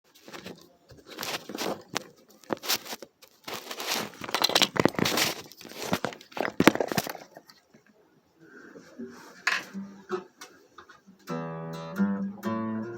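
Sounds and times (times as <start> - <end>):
rustling and crinkling: 0.1 - 8.0.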